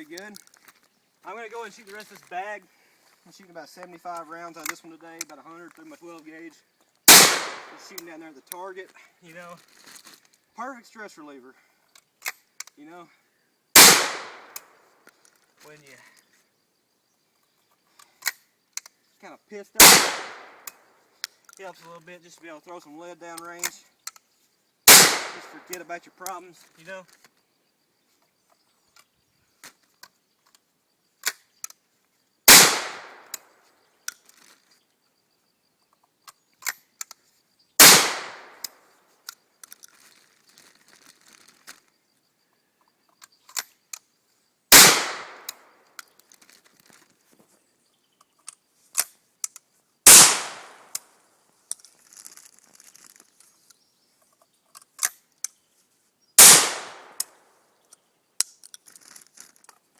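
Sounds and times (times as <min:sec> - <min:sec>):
shotgun blasts: 0:07.1 - 0:07.9, 0:13.8 - 0:14.6, 0:19.8 - 0:20.7, 0:24.9 - 0:25.7, 0:32.5 - 0:33.4, 0:37.8 - 0:38.6, 0:44.7 - 0:45.6, 0:50.1 - 0:50.9, 0:56.4 - 0:57.2
shotgun reloading clicks and knocks: 0:32.5 - 0:33.5.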